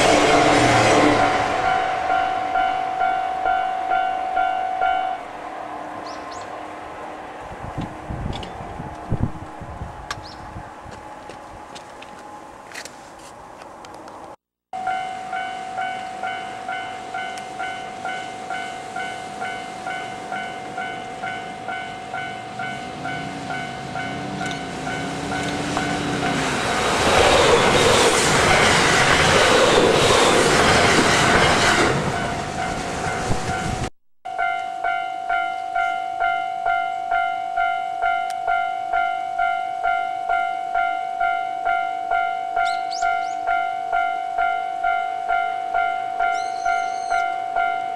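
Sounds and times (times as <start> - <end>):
level-crossing alarm ringing: 0.0 - 5.3, 14.8 - 26.3, 32.2 - 47.9
train horn: 0.0 - 9.8
train passing wheel and rail noise: 0.0 - 47.9.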